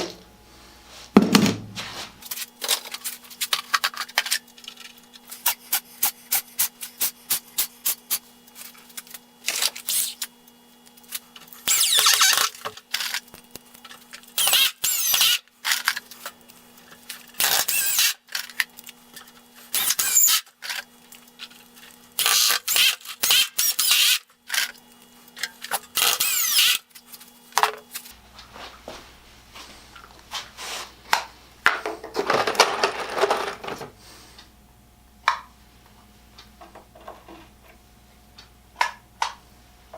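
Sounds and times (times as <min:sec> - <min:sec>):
power drill running: 0:11.6 - 0:12.6, 0:14.4 - 0:15.4, 0:17.4 - 0:18.2, 0:19.7 - 0:20.4, 0:22.2 - 0:24.2, 0:26.0 - 0:26.8.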